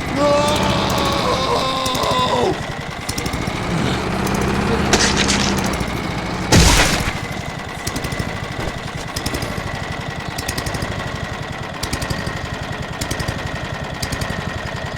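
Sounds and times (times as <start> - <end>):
lawn mower engine running: 0.0 - 14.9
loud crash: 6.5 - 7.5.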